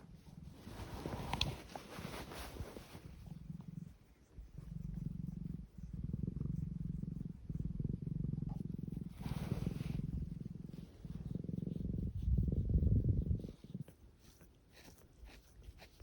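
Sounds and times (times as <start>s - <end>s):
soft hissy noise: 0.0s - 6.0s, 8.6s - 12.0s
cat purring: 0.0s - 16.0s.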